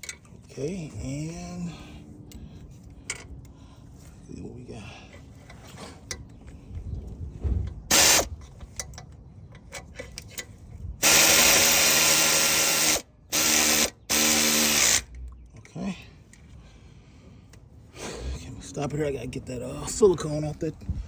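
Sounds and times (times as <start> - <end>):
air ratchet whining: 7.9 - 8.3, 11.0 - 15.2.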